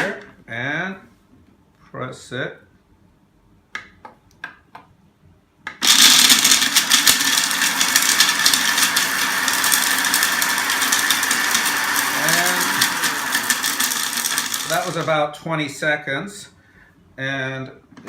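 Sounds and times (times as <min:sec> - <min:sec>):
grinder clicks: 0:05.7 - 0:15.1
electric grinder chopping nuts: 0:05.7 - 0:15.2.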